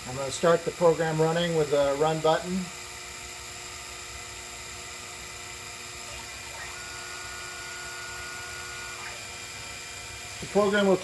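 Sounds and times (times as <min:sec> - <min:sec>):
milling machine spindle whirring: 0:04.6 - 0:11.0
high steady whine: 0:05.0 - 0:11.0.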